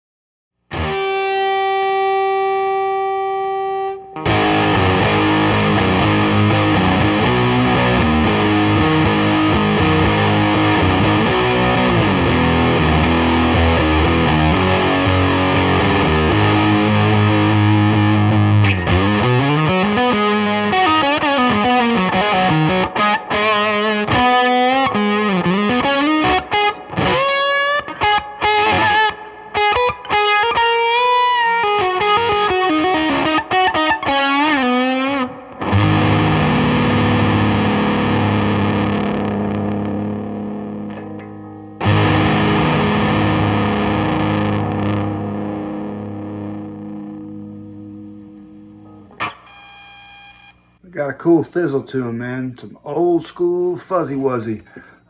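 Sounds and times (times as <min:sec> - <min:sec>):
fuzz electric guitar: 0:00.7 - 0:50.6.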